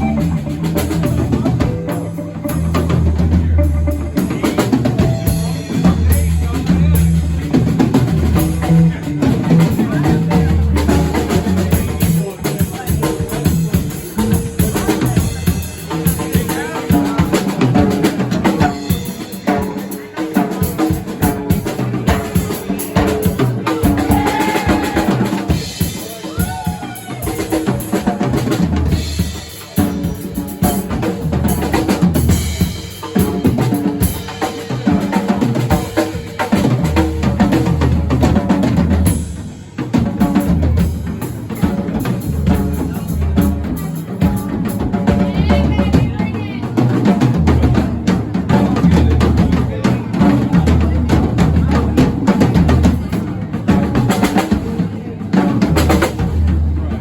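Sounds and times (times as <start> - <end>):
heavy bass line: 0.0 - 12.9
drum kit fast beat: 0.0 - 57.0.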